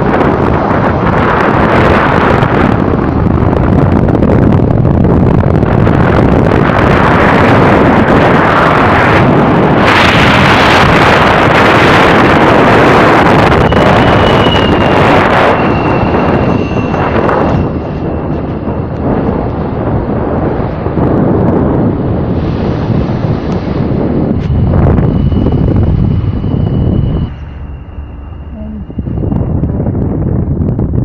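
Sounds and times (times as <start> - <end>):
moving vehicle running noise: 0.0 - 31.0
wind buffeting microphone: 0.0 - 31.0
faint high tone: 26.5 - 29.9.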